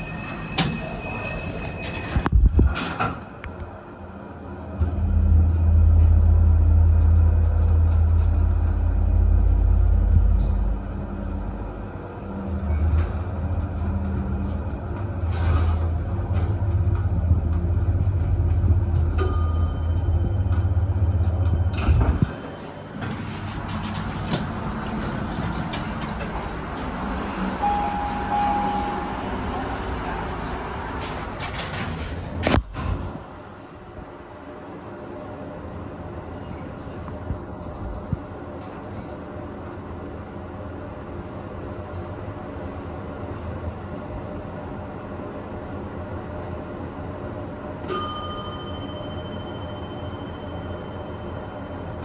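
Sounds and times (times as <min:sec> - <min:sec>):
elevator arrival chime: 0:00.0 - 0:02.3, 0:19.2 - 0:32.2, 0:47.8 - 0:52.0
elevator hydraulic hum: 0:00.0 - 0:02.4, 0:04.5 - 0:34.9.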